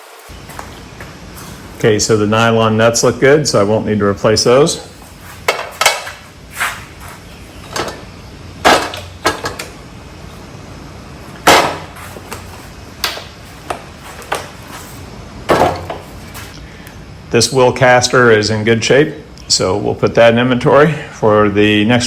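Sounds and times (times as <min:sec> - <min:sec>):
metal parts knocking and clinking: 0:07.6 - 0:09.8.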